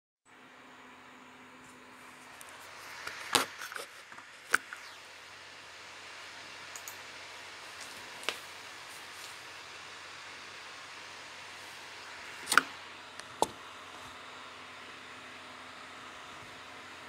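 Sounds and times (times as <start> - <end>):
sharp clicks: 6.7 - 7.0.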